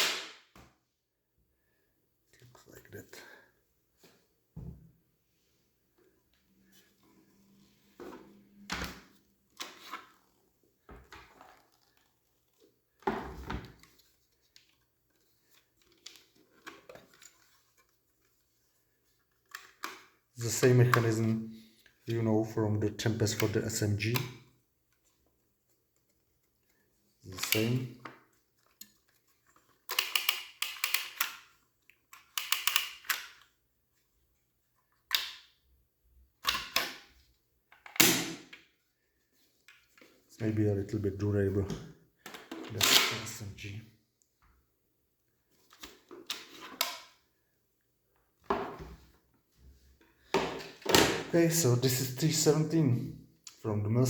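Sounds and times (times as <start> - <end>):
knocks and clicks of handled parts: 29.9 - 33.4.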